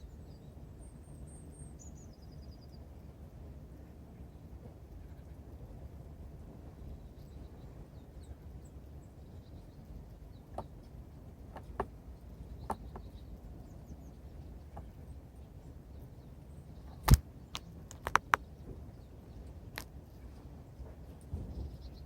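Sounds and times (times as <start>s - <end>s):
small birds chirping: 0.0s - 3.2s, 3.8s - 22.0s
low outdoor rumble: 0.0s - 22.0s
beaks tapping feeder: 9.8s - 15.5s, 16.8s - 18.7s.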